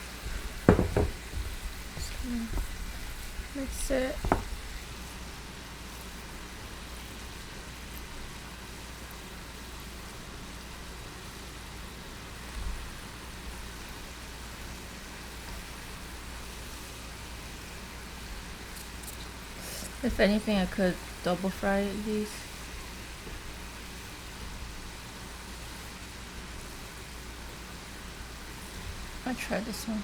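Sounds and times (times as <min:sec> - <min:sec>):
food deep frying in oil: 0:00.0 - 0:30.0
soft low thump: 0:04.2 - 0:04.6.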